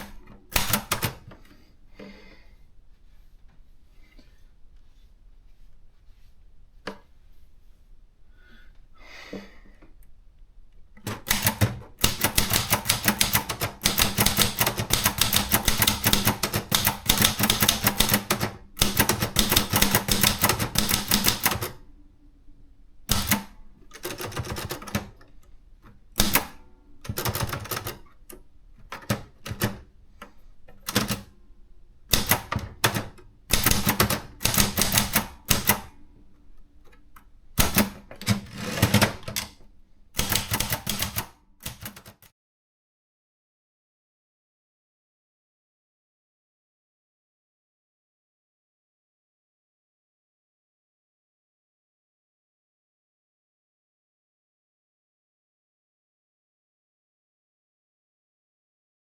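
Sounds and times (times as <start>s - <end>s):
manual typewriter typing: 0.0s - 1.4s, 11.0s - 21.8s, 23.1s - 25.2s, 26.1s - 29.9s, 30.8s - 31.3s, 32.1s - 36.0s, 37.6s - 39.6s, 40.2s - 42.3s.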